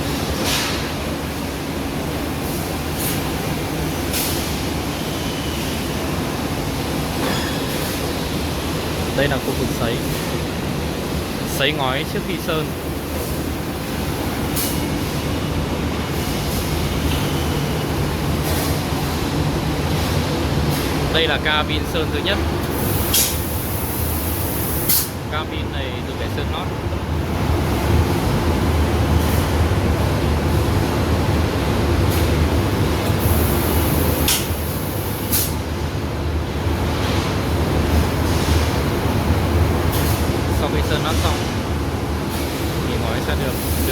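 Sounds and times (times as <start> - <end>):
machinery humming: 0.0 - 43.9
low machine hum: 4.7 - 24.6.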